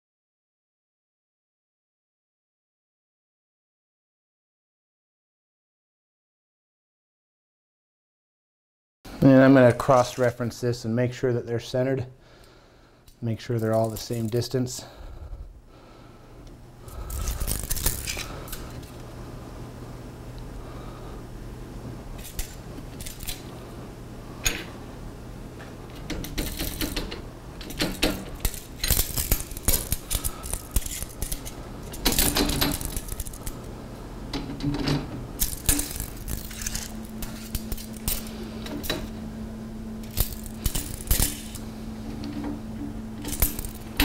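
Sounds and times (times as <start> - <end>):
steady low hum: 9.1 - 44.0
metal brackets clinking and scraping: 13.5 - 14.5, 16.9 - 19.0, 22.2 - 23.5, 26.0 - 33.7, 34.4 - 39.2, 40.0 - 42.6, 43.2 - 44.0.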